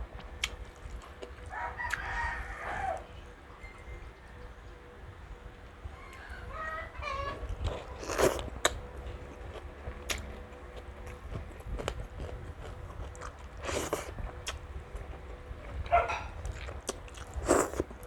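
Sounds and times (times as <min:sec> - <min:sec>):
crunchy biting and chewing: 0:00.3 - 0:03.0, 0:07.3 - 0:18.0.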